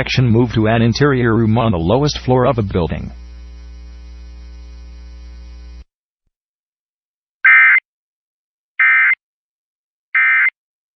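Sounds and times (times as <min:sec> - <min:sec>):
steady hum: 0:00.0 - 0:05.9.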